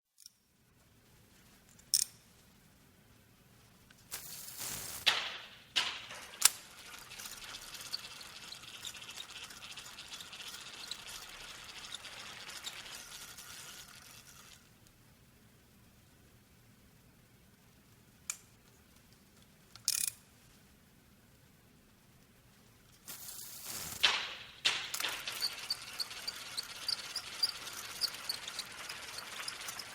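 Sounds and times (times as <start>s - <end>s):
steady hiss: 2.5s - 19.1s, 20.3s - 29.9s
fishing reel rattling clicking: 5.8s - 14.6s, 23.2s - 29.9s.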